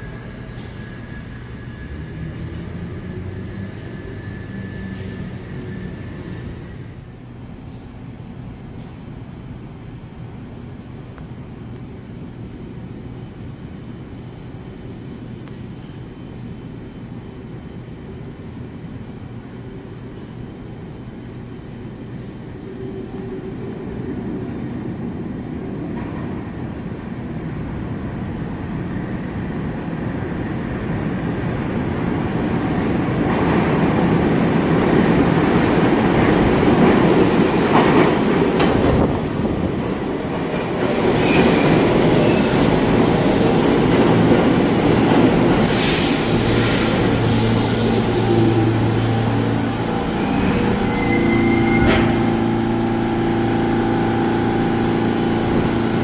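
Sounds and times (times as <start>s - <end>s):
train wheel squeal: 0.0s - 7.0s, 40.9s - 43.6s, 45.5s - 56.0s
subway train in tunnel: 0.0s - 56.0s.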